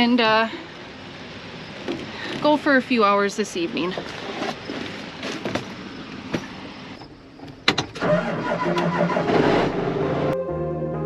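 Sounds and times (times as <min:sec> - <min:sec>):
tractor engine starting: 0:07.5 - 0:10.4.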